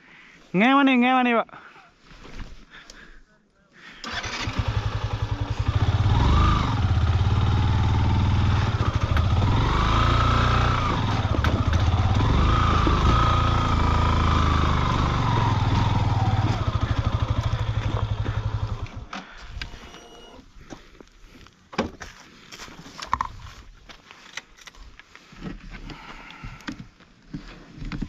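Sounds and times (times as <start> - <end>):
motorcycle engine revving: 4.1 - 19.1.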